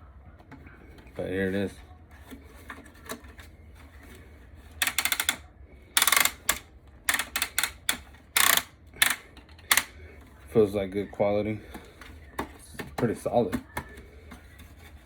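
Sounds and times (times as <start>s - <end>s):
plastic fan body clicking and rattling: 0.4s - 10.3s.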